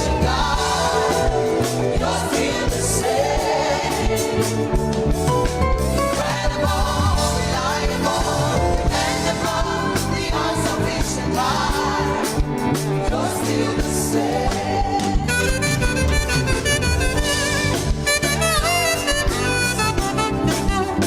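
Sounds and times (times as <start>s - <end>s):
band with drums: 0.0s - 21.0s.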